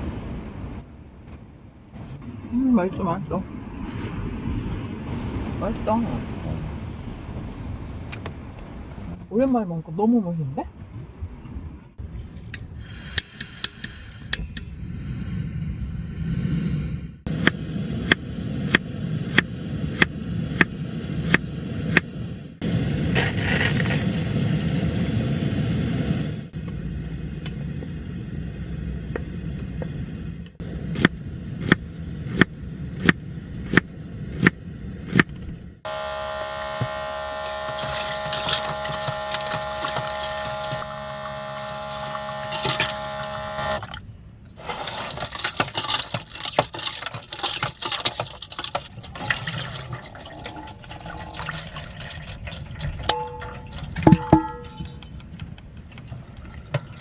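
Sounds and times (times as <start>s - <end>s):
water running and splashing: 37.5s - 44.0s, 44.6s - 54.7s
steady tone: 53.1s - 55.0s.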